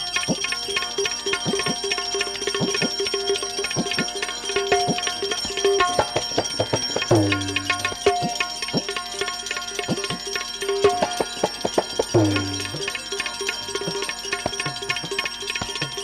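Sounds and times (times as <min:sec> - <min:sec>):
steady high ringing: 0:00.0 - 0:16.0
tabla strokes: 0:00.0 - 0:16.0
plucked-string melody: 0:01.4 - 0:09.0, 0:10.8 - 0:16.0.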